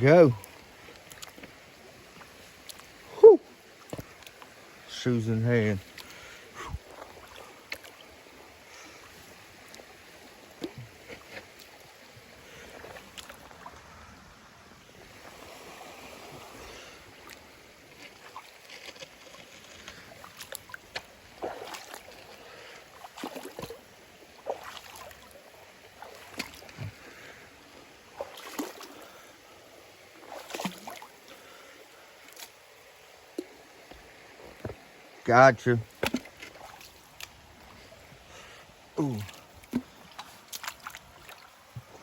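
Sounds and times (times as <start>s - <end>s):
stream rushing: 0.0s - 42.0s
feet splashing in water: 17.2s - 27.4s, 28.1s - 29.2s, 30.1s - 31.5s, 35.9s - 38.0s, 39.0s - 42.0s.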